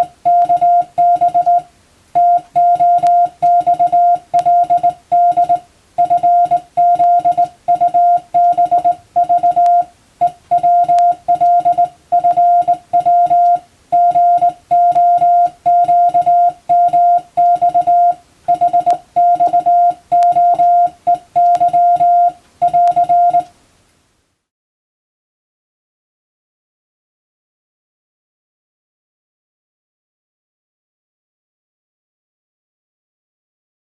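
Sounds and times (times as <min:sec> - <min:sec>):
morse code beeps: 0:00.0 - 0:23.5.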